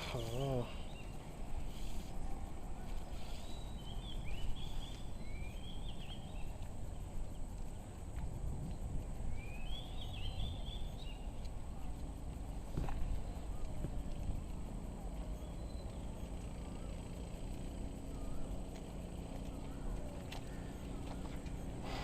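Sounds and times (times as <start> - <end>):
birds chirping: 0.0 - 22.0
low outdoor rumble: 0.0 - 22.0.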